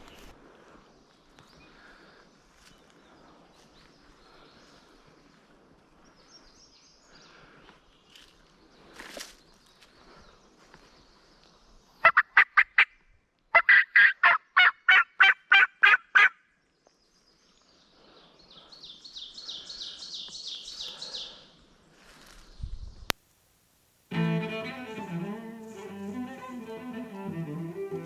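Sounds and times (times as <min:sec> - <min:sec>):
turkey call yelps: 0:13.6 - 0:16.3.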